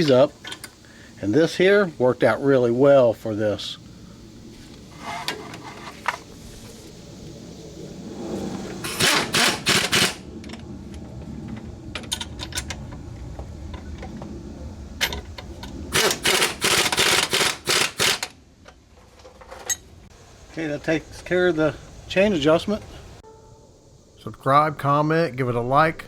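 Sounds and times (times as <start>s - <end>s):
ratchet wrench clicking: 16.0s - 18.3s.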